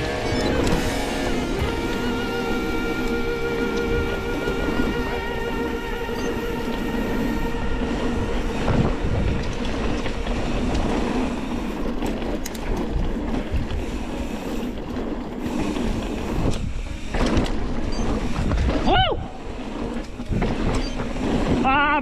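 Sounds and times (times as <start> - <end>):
mountain bike rattling: 0.0 - 22.0
multi-tone whine: 0.0 - 22.0
wind on microphone: 0.0 - 22.0.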